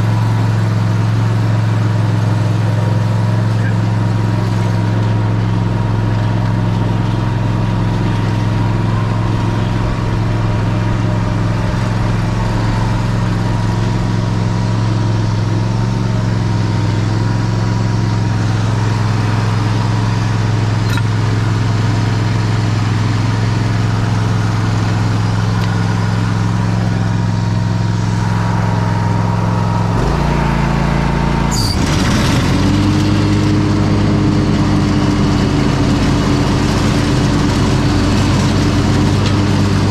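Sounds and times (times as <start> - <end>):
mower engine running: 0.0 - 39.9.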